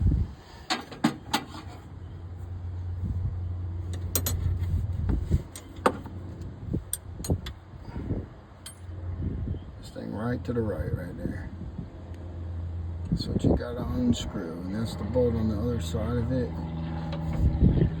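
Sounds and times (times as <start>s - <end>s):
low steady hum: 0.0s - 18.0s
tools clicking and knocking on metal: 3.9s - 4.6s, 5.5s - 6.1s.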